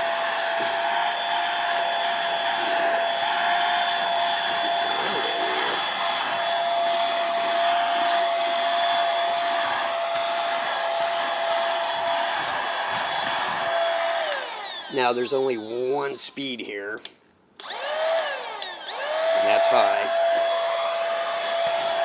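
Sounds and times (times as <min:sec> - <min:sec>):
handheld vacuum cleaner motor whine: 0:00.0 - 0:16.0, 0:17.6 - 0:22.0.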